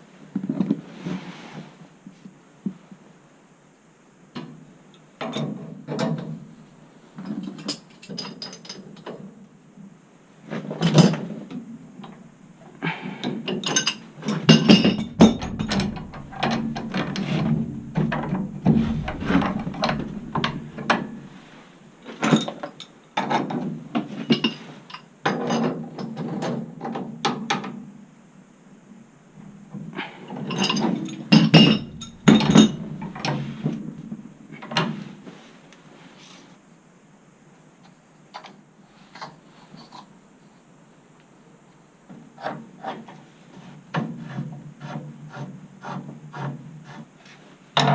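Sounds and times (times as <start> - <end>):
metal clanks: 14.5 - 21.6, 31.4 - 34.1.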